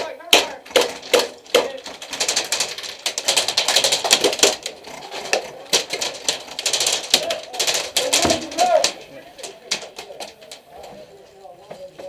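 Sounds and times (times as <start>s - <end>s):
airsoft guns firing: 0.0s - 9.0s.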